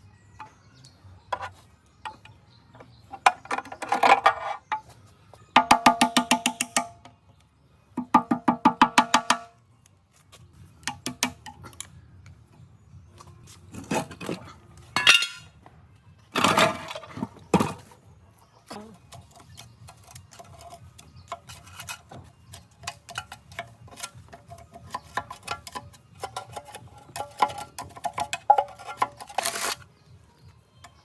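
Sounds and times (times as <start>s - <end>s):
metal parts clinking and scraping: 13.7s - 15.6s, 19.2s - 29.9s.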